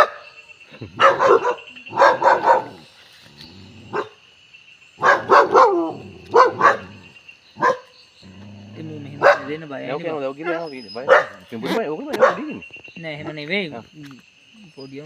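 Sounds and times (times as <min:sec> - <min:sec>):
dog barking: 0:00.0 - 0:00.3, 0:01.0 - 0:02.8, 0:03.9 - 0:04.2, 0:05.0 - 0:08.0, 0:09.1 - 0:09.6, 0:10.4 - 0:12.6.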